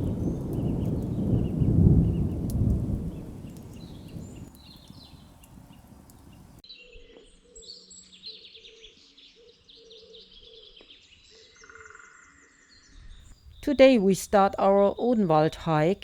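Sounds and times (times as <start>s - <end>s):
songbirds chirping and trilling: 0.0s - 6.6s.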